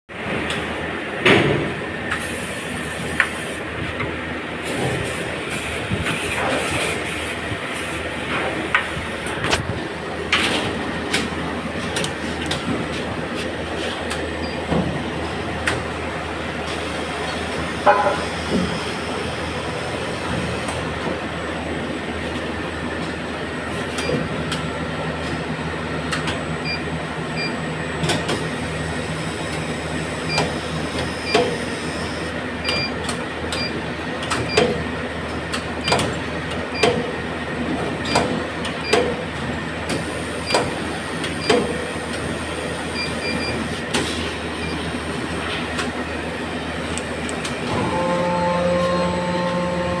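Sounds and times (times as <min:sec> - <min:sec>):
sharp machine clunks and clicks: 0:35.5 - 0:36.2
machine hum: 0:41.9 - 0:50.0.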